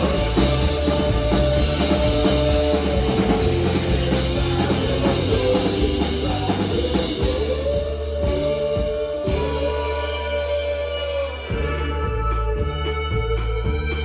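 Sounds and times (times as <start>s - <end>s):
live rock band playing: 0.0s - 14.0s.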